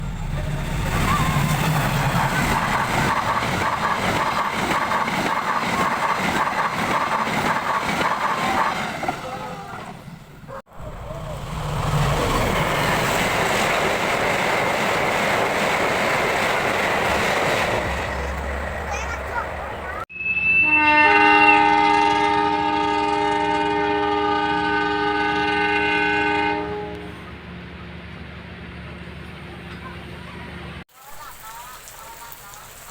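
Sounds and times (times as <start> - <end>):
train running past: 0.0 - 30.8
train horn chord: 20.2 - 27.5.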